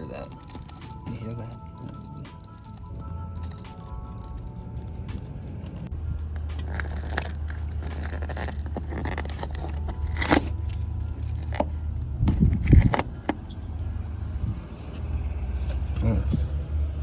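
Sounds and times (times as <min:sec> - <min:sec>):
steady low hum: 0:00.0 - 0:17.0
pry tool scraping and clicking: 0:06.6 - 0:13.6.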